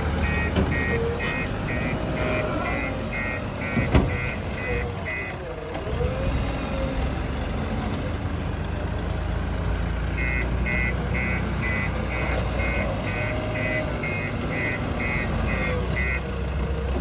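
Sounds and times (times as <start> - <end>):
reversing alarm beeping: 0.0 - 5.4, 10.2 - 16.4
diesel engine running: 0.0 - 17.0.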